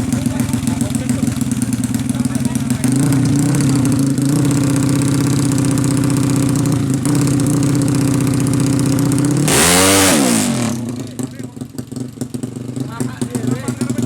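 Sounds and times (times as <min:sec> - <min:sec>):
motorcycle engine idling and revving: 0:00.0 - 0:14.0.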